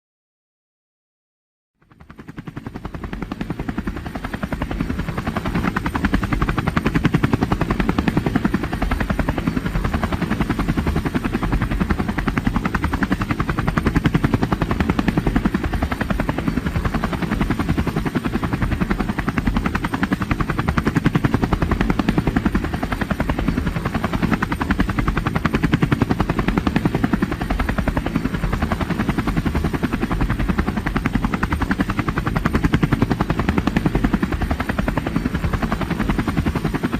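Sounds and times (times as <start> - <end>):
helicopter rotor chopping: 1.8 - 36.9.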